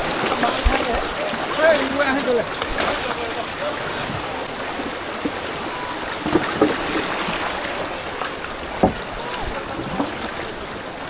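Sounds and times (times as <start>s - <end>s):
river rushing: 0.0s - 11.0s
knocks and thumps: 6.2s - 7.0s, 8.6s - 10.2s.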